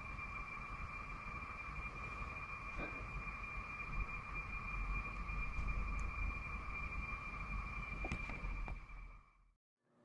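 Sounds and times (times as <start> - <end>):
low rumble: 0.0 - 9.3
thin high tone: 0.0 - 9.4
low wide drone: 0.0 - 9.5.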